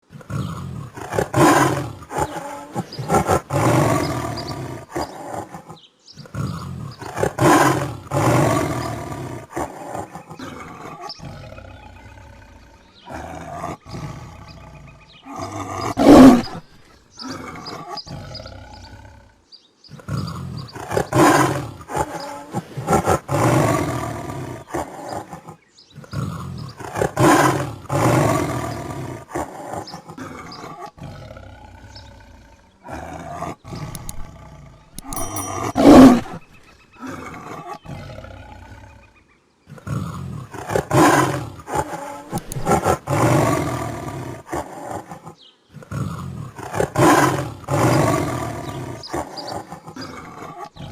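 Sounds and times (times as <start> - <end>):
tiger roaring: 0.0 - 19.4, 20.0 - 39.1, 39.7 - 50.9
tiger growling: 0.0 - 50.9.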